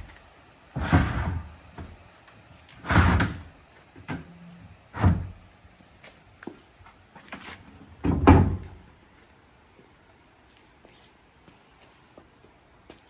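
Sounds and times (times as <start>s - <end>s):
plastic tank scraping into metal cage: 0.8s - 1.5s, 2.8s - 3.5s.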